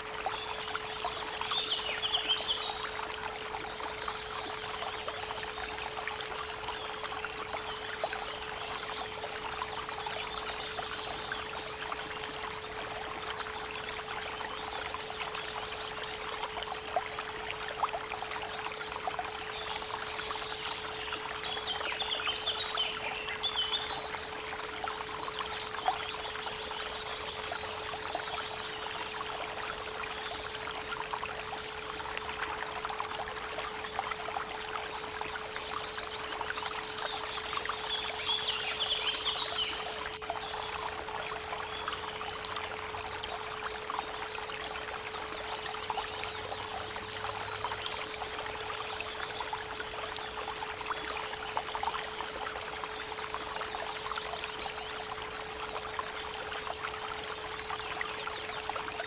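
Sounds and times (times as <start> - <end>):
creek water running: 0.0 - 59.0.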